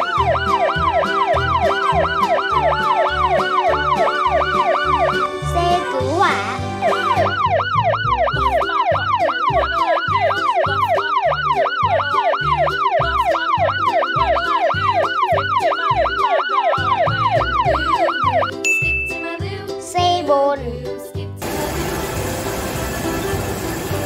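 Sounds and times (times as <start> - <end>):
siren sweeping up and down: 0.0 - 5.6, 6.4 - 18.6
background music with steady beat: 0.0 - 24.0.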